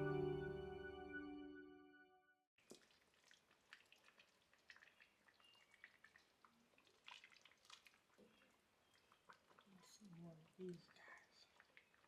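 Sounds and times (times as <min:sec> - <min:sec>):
guitar background music: 0:00.0 - 0:01.8.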